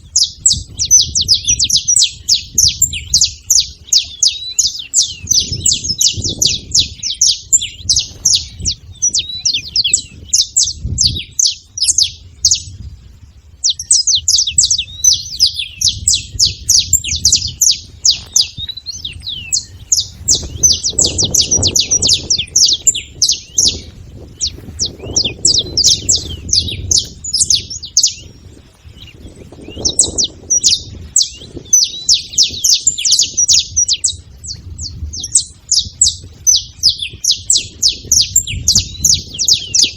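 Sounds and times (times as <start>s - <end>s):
finch singing high chirps: 0.0s - 39.9s.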